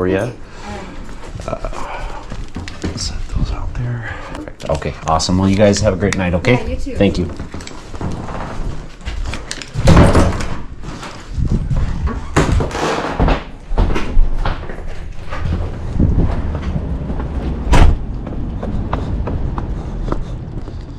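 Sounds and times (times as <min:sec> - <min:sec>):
people moving about: 0:00.0 - 0:09.8, 0:10.4 - 0:20.9
door being shut: 0:09.8 - 0:10.7, 0:17.6 - 0:18.1
loud thuds and knocks: 0:11.6 - 0:18.5.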